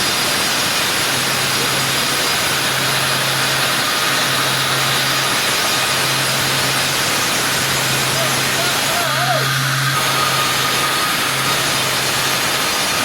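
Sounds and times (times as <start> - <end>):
sawmill machinery running: 0.0 - 13.0.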